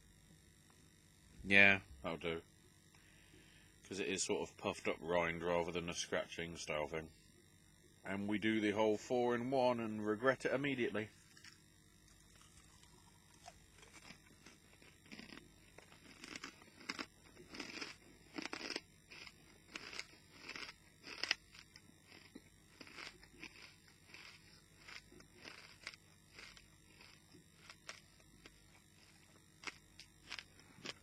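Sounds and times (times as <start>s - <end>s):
person crunching and chewing: 11.2s - 31.0s.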